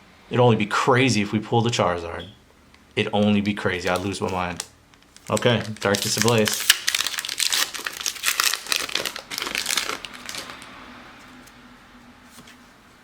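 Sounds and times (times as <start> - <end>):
foil wrapper crinkling: 3.7 - 10.7.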